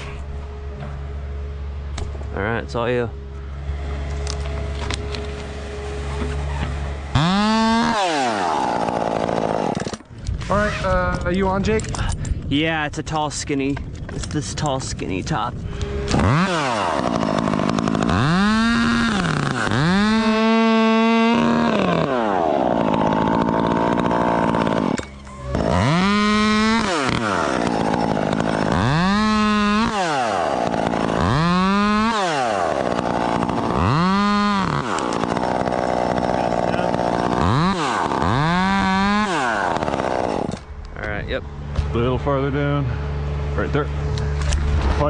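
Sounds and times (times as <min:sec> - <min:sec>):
chainsaw revving: 0:06.1 - 0:10.1, 0:15.8 - 0:40.7.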